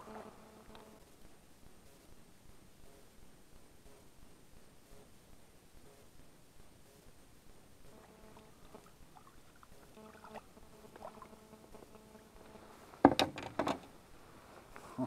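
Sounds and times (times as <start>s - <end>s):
faint hum: 0.0s - 15.0s
sharp knocks and thumps in boat: 13.0s - 13.9s.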